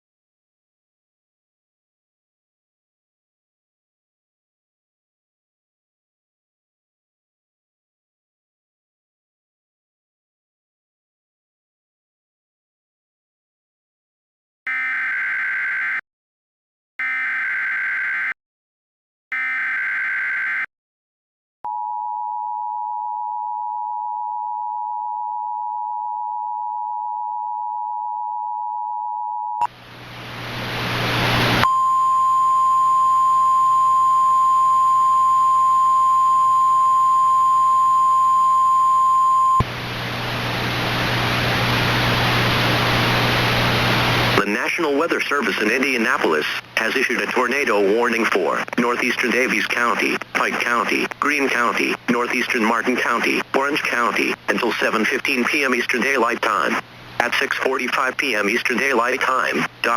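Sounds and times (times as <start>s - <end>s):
steady warning tone: 31.6s - 39.6s
two-tone attention signal: 31.6s - 39.6s
radio static: 39.6s - 59.9s.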